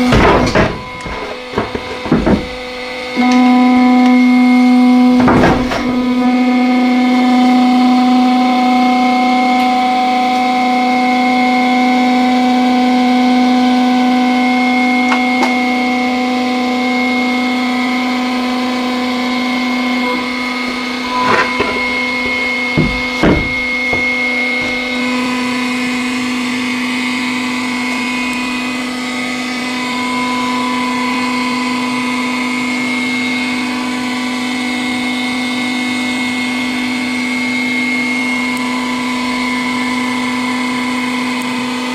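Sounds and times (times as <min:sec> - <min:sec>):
sharp knocks: 0:00.0 - 0:02.7, 0:21.3 - 0:24.8
hydraulic pump humming: 0:00.0 - 0:41.9.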